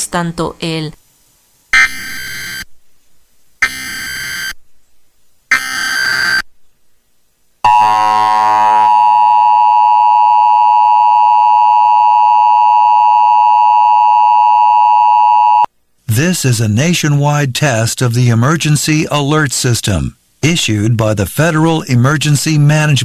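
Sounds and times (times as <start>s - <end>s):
screeching data tones: 1.8s - 2.6s, 3.6s - 4.6s, 5.5s - 6.4s
two-tone attention signal: 3.6s - 4.5s, 7.7s - 15.7s.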